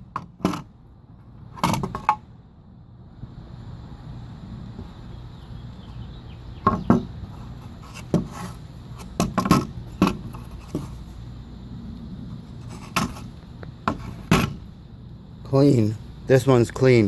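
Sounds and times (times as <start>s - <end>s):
low hum: 8.5s - 16.3s
hard objects knocking and clattering: 9.2s - 10.9s.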